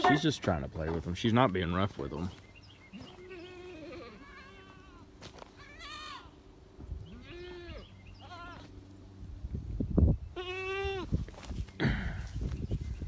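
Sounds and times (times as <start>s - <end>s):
goats bleating: 3.0s - 6.4s, 7.1s - 8.7s, 10.4s - 11.1s.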